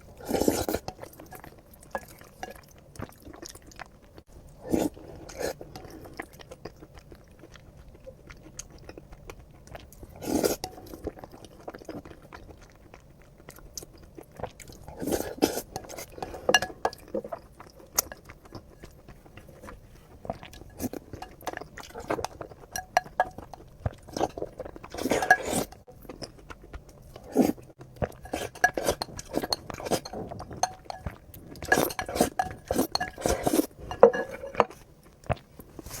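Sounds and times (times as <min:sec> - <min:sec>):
chewing: 0:00.1 - 0:36.0
utensils clinking on dishes: 0:28.2 - 0:34.8.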